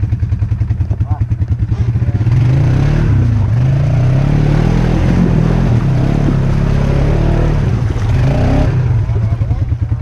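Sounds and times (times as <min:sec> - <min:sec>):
atv engine revving: 0:00.0 - 0:10.0.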